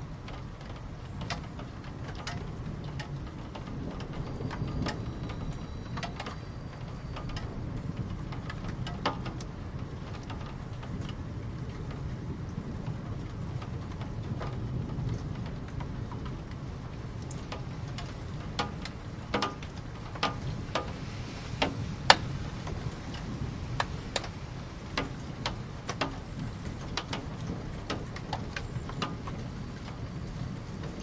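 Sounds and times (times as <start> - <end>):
raindrops dripping on hard surface: 0.0 - 31.0.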